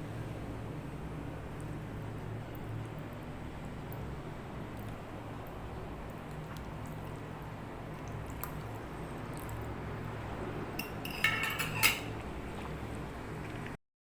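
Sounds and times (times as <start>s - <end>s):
steady low hum: 0.0s - 13.8s
cutlery clinking against plate: 10.8s - 12.1s.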